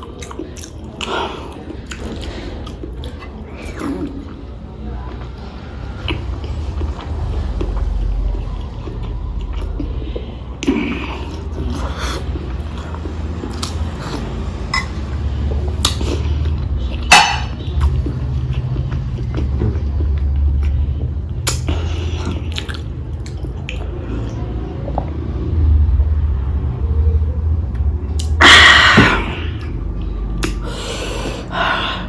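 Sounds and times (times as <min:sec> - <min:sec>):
wet mouth chewing smacks: 0:00.0 - 0:04.4, 0:10.6 - 0:15.0, 0:15.8 - 0:25.1, 0:30.4 - 0:30.7
low rumble: 0:11.2 - 0:32.0.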